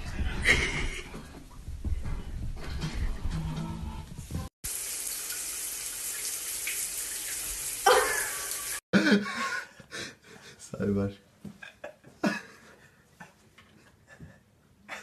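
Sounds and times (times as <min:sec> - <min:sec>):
running water rushing: 0:04.6 - 0:08.8.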